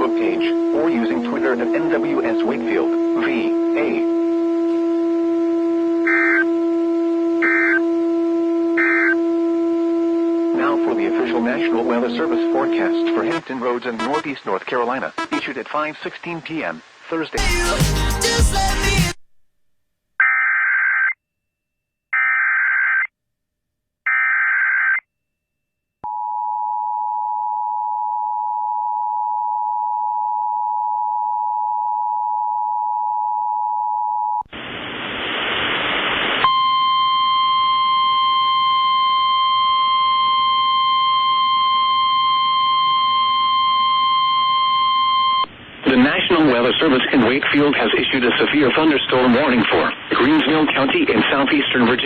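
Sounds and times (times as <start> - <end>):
burst of static: 0.0 - 4.8, 10.5 - 19.2, 34.5 - 36.5, 45.5 - 52.0
radio hiss: 0.0 - 4.8, 6.0 - 6.5, 7.4 - 7.8, 8.8 - 9.2, 10.5 - 19.0, 34.5 - 36.5, 45.6 - 52.0.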